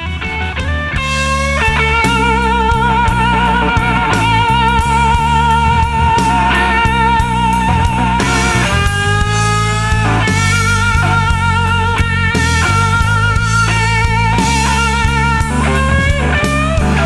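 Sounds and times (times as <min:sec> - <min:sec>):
bass guitar: 0:00.0 - 0:17.0
drum kit: 0:00.0 - 0:17.0
electric guitar with vibrato: 0:00.0 - 0:17.0.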